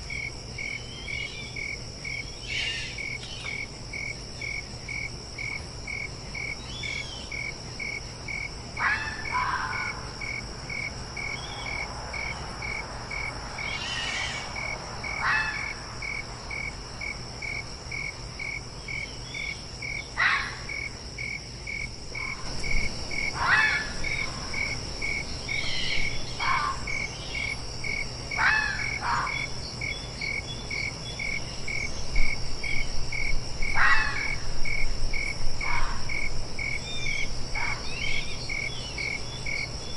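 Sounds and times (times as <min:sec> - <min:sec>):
crickets chirping: 0:00.0 - 0:39.9
high insect drone: 0:00.0 - 0:39.9
fox barking: 0:23.3 - 0:24.0.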